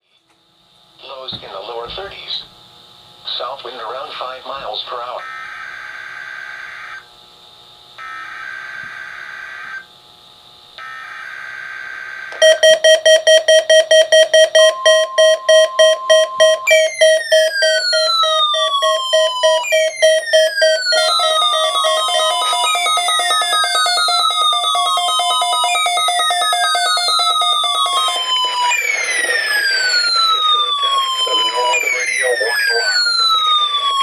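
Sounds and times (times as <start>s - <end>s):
buzzing digital data bursts: 11.2s - 34.0s
fast loud alert beeps: 12.4s - 34.0s
falling whistle-like tones: 14.6s - 34.0s.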